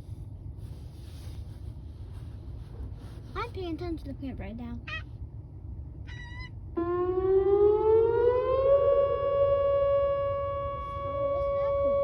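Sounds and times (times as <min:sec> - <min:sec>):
outdoor warning siren: 0:06.7 - 0:12.0.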